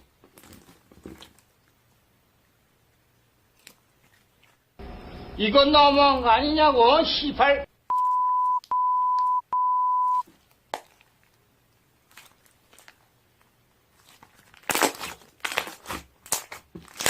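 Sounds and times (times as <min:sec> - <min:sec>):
crackly crunching and crinkling: 0:00.0 - 0:04.8, 0:10.2 - 0:17.0
electronic beep tone: 0:07.9 - 0:10.2.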